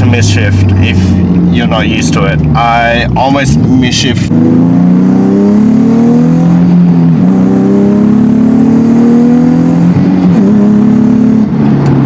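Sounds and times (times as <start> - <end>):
car engine accelerating hard: 0.0 - 12.0.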